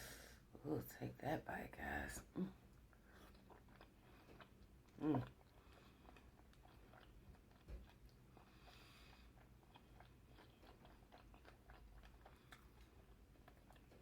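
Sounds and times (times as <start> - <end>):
close-up chewing: 2.5 - 14.0.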